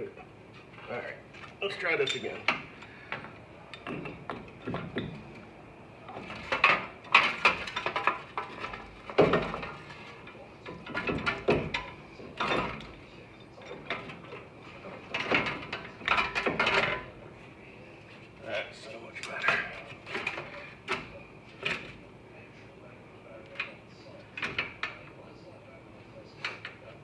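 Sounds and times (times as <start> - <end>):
metal clunks and clinks: 2.0 - 5.4, 6.1 - 17.2.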